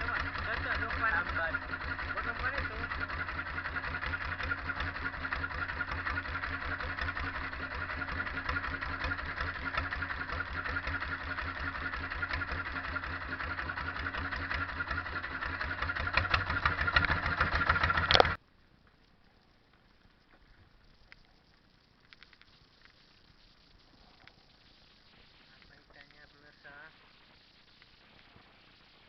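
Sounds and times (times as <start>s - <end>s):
boat engine running: 0.0s - 18.4s.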